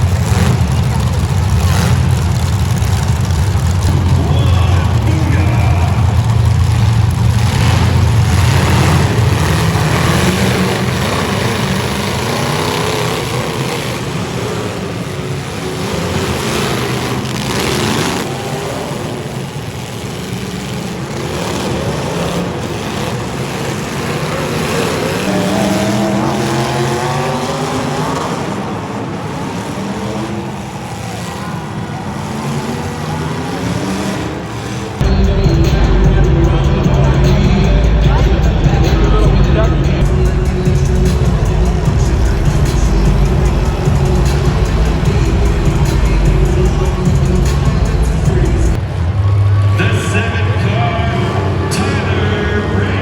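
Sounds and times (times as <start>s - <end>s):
car engine revving: 0.0s - 53.0s
car engines rumbling: 0.0s - 53.0s.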